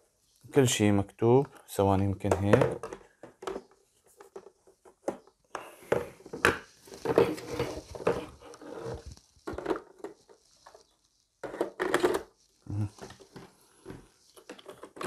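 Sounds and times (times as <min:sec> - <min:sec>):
plastic parts and packaging handled: 0:01.4 - 0:15.0.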